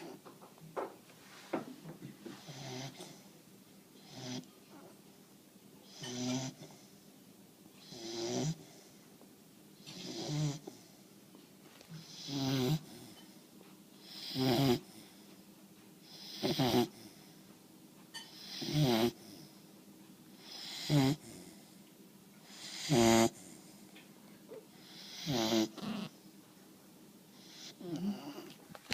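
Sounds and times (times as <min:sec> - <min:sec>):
rhythmic snoring: 0:02.4 - 0:03.2, 0:05.9 - 0:06.9, 0:07.8 - 0:08.8, 0:09.9 - 0:10.8, 0:12.0 - 0:13.2, 0:14.0 - 0:15.2, 0:16.1 - 0:17.2, 0:18.3 - 0:19.5, 0:20.4 - 0:21.6, 0:22.5 - 0:23.5, 0:24.8 - 0:26.2.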